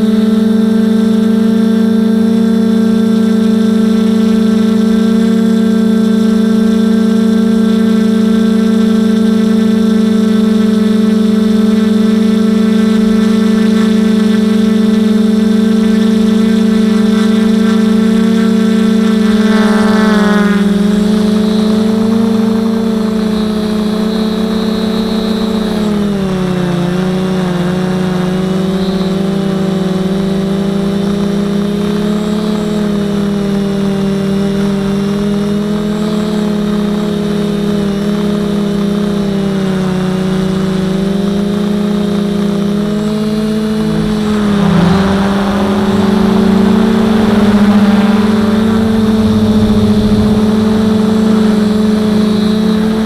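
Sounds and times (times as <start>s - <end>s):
drone motors humming: 0.0s - 53.0s
wind noise: 42.4s - 53.0s.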